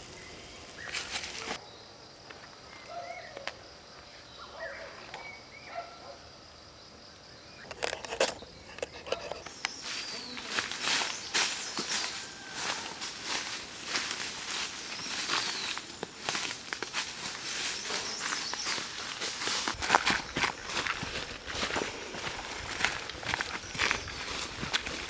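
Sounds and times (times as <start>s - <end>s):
footsteps through dry leaves: 0.0s - 1.6s, 8.0s - 25.0s
high insect drone: 0.0s - 4.5s, 6.3s - 25.0s.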